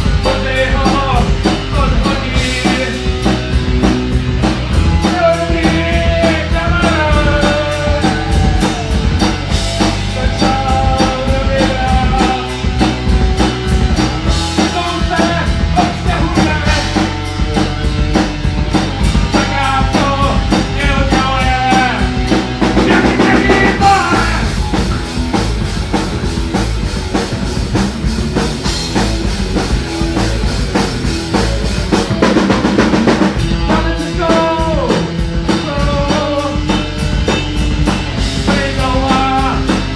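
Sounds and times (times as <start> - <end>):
drum kit: 0.0 - 39.9
guitar: 0.0 - 39.9
person singing: 4.8 - 13.2, 19.2 - 26.6, 30.2 - 37.0, 38.3 - 39.9.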